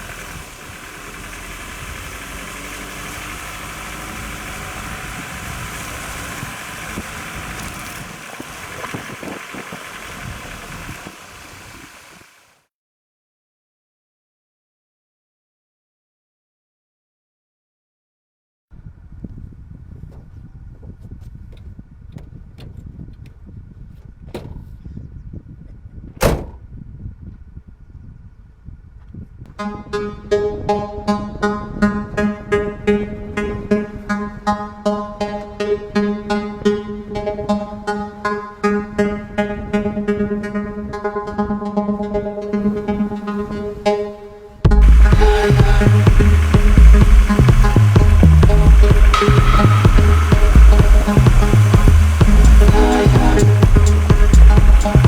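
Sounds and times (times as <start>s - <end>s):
pickup truck engine running: 0.0s - 12.5s, 44.7s - 55.0s
vehicle rumble: 0.0s - 12.5s, 44.7s - 55.0s
loud sharp thump: 26.2s - 26.6s.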